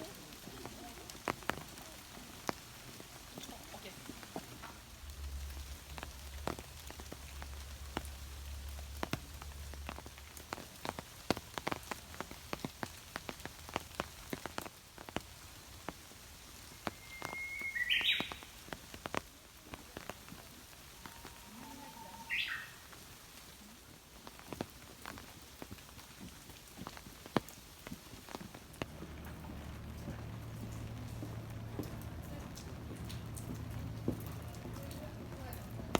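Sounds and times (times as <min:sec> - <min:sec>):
raindrop drips: 0:00.0 - 0:35.9
steady rain: 0:00.0 - 0:35.9
bird calling: 0:16.8 - 0:18.6, 0:21.0 - 0:22.9.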